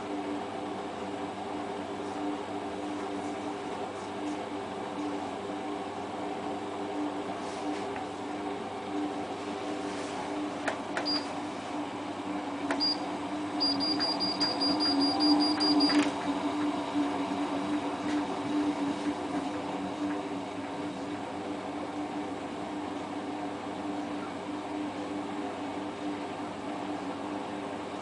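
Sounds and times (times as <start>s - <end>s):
high beeps: 13.6s - 16.0s.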